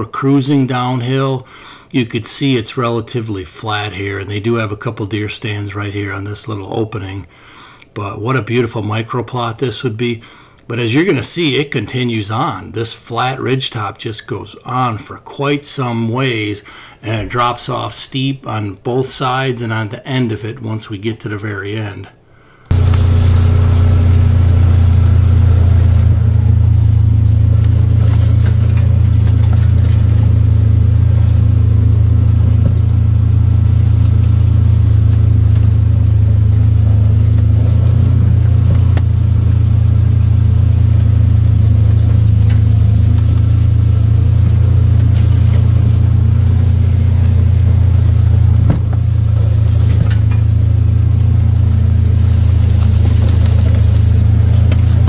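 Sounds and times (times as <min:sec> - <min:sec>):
vehicle engine droning: 0:22.7 - 0:55.0.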